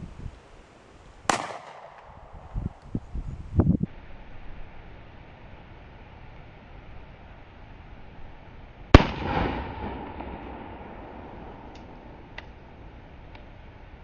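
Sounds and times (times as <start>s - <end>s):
pistol shot hitting steel: 1.3s - 2.8s.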